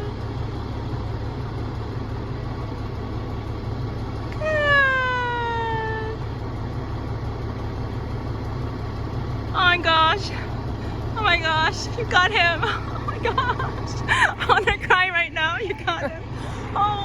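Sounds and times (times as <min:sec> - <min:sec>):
truck engine humming: 0:00.0 - 0:17.0
long descending cry: 0:04.4 - 0:06.3.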